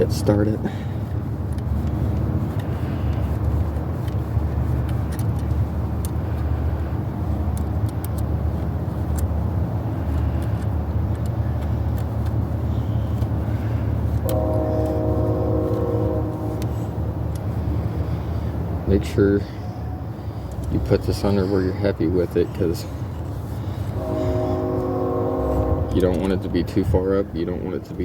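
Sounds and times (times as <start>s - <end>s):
steady tones: 13.2s - 19.0s, 19.6s - 28.0s
low rumble: 23.0s - 28.0s.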